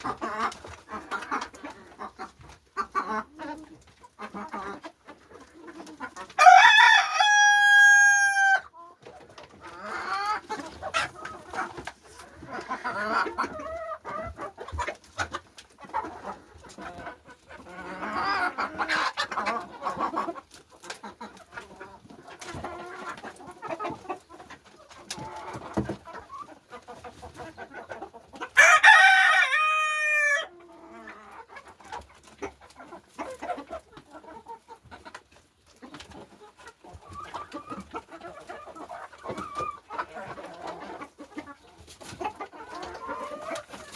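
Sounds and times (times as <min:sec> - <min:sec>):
chickens clucking: 0:00.0 - 0:43.9
rooster crowing: 0:06.4 - 0:08.6, 0:28.6 - 0:30.4.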